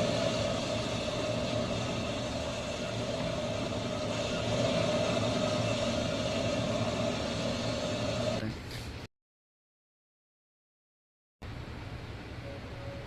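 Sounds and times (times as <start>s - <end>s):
heat gun blowing: 0.0s - 8.4s.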